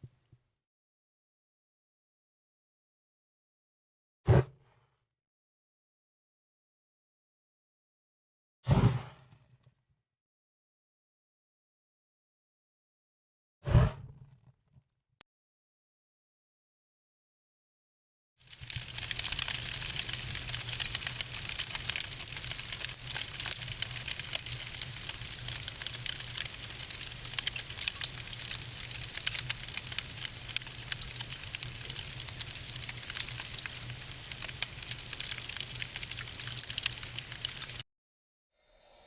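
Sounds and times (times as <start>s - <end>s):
fire crackling and popping: 18.4s - 37.8s.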